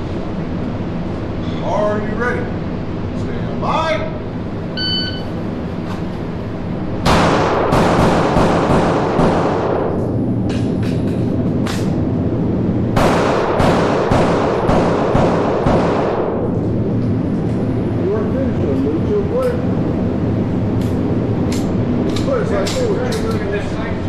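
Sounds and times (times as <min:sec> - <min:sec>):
handgun shots: 0:07.1 - 0:12.0, 0:13.0 - 0:16.4, 0:21.5 - 0:23.4.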